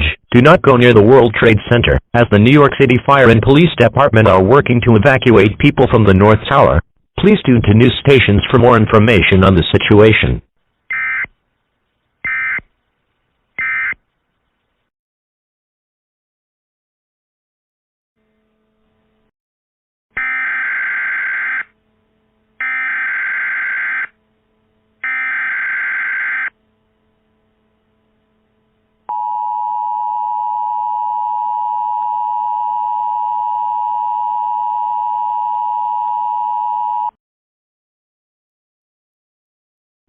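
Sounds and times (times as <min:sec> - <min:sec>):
two-tone attention signal: 0:29.1 - 0:37.1.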